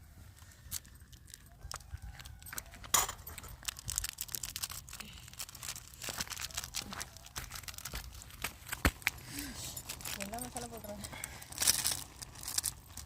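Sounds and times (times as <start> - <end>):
plastic sachet crinkling: 0.4 - 13.0
sharp plastic tear: 3.6 - 9.2.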